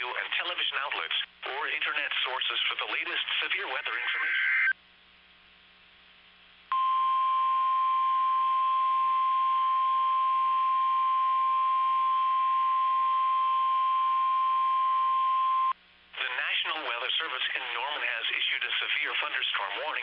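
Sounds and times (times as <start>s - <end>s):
faint radio hiss: 0.0s - 6.8s, 15.7s - 20.0s
steady high-pitched alarm tone: 6.7s - 15.8s.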